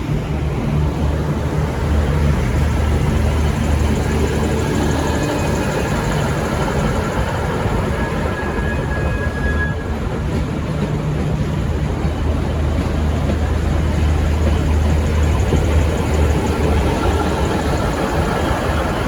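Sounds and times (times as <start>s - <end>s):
diesel train engine drone: 0.0s - 19.0s
rail rolling noise: 0.0s - 19.0s
faint thin squeal: 7.7s - 9.9s.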